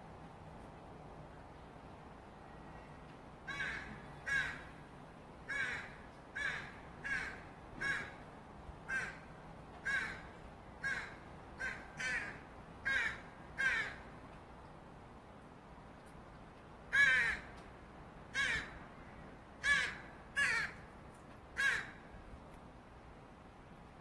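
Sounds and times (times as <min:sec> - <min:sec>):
crow begging calls: 0:03.5 - 0:04.7, 0:05.5 - 0:08.2, 0:09.8 - 0:14.0, 0:16.9 - 0:17.5, 0:18.4 - 0:18.8, 0:19.6 - 0:20.8, 0:21.6 - 0:22.0.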